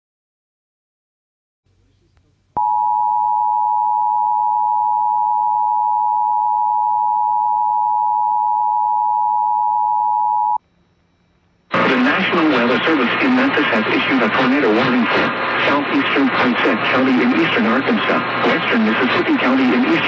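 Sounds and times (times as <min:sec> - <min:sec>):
faint radio hiss: 0:01.7 - 0:02.6, 0:10.6 - 0:20.0.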